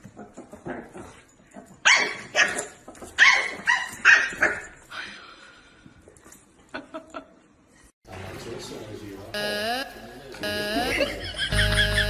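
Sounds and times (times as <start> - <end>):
dog barking: 1.9 - 4.7.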